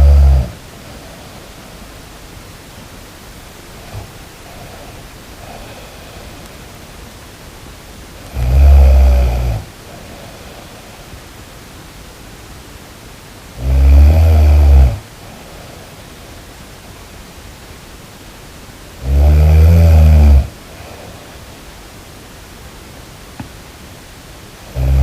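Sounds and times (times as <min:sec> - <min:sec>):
person snoring: 0:00.0 - 0:01.4, 0:03.8 - 0:06.7, 0:08.2 - 0:11.1, 0:13.6 - 0:15.0, 0:19.0 - 0:21.4, 0:24.7 - 0:25.0
steady hiss: 0:00.0 - 0:25.0.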